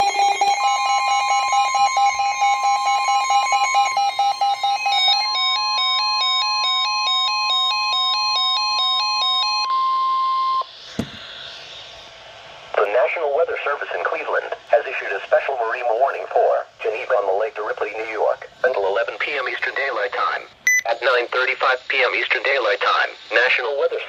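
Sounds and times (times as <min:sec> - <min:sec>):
electronic alarm beeping: 0:00.0 - 0:11.3, 0:20.6 - 0:21.0
steady high alarm tone: 0:00.0 - 0:11.4.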